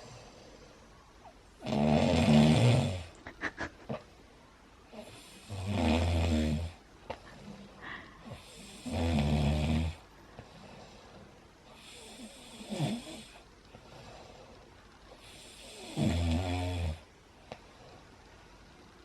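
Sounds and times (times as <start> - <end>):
man snoring loudly: 1.6 - 3.1, 5.0 - 6.8, 8.3 - 10.0, 11.8 - 13.4, 15.4 - 17.0.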